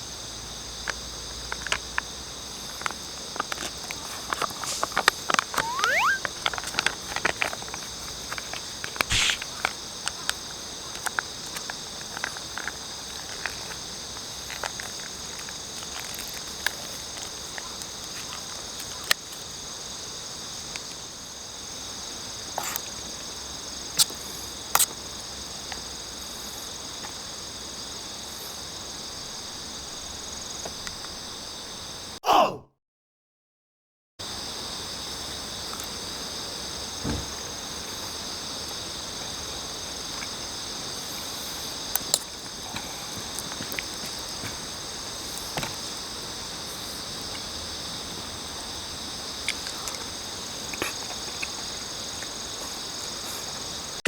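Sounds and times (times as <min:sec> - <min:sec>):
crickets and insects chirping: 0:00.0 - 0:32.2, 0:34.2 - 0:54.0
short sharp clicks: 0:09.1 - 0:09.5.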